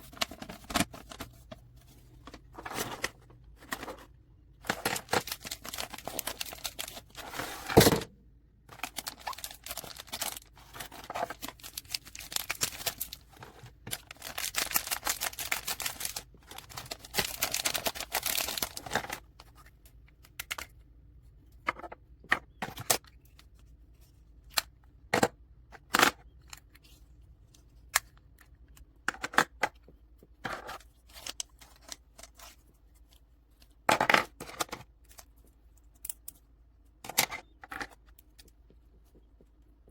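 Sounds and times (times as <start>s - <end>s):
packaging crinkling and rustling: 0.0s - 8.1s, 8.7s - 19.6s.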